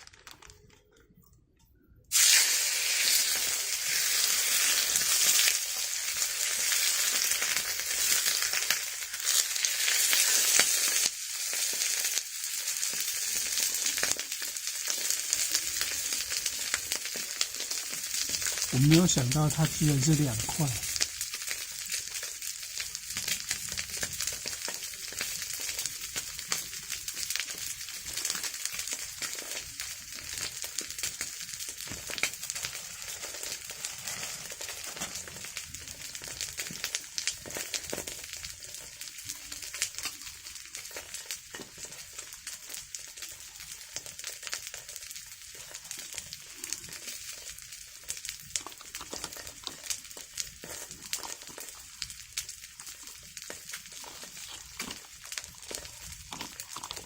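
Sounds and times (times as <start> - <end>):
small crackling pops: 0.0 - 2.4, 12.8 - 57.0
food sizzling in hot oil: 2.1 - 57.0.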